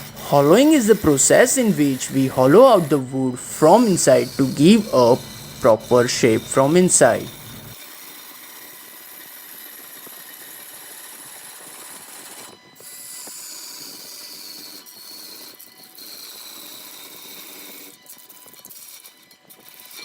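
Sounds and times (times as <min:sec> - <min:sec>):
lathe tool scraping spinning wood: 0:00.0 - 0:07.8.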